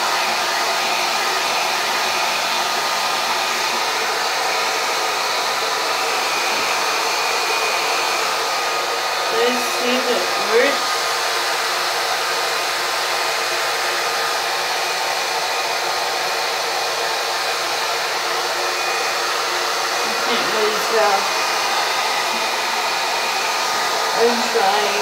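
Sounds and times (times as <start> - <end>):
hair dryer running: 0.0 - 25.0.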